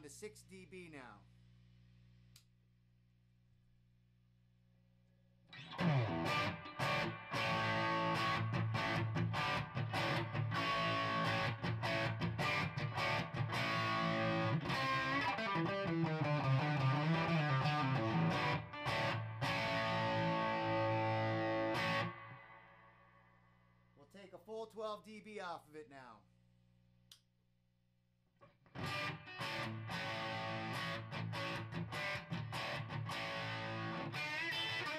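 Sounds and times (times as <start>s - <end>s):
faint amp hum: 0.0s - 6.5s
electric guitar playing: 5.5s - 23.0s, 28.7s - 34.9s.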